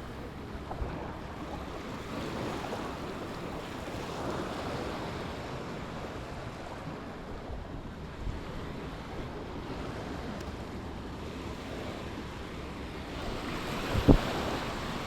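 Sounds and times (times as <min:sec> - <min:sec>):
sea waves washing on beach: 0:00.0 - 0:15.0
wind on microphone: 0:11.2 - 0:15.0.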